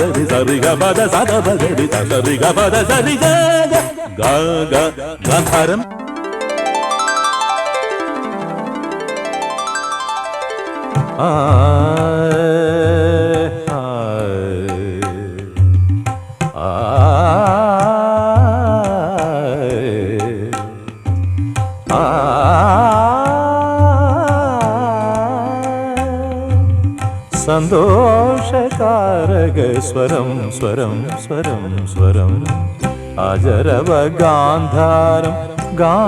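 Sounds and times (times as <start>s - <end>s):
ornamented melodic song: 0.0s - 36.0s.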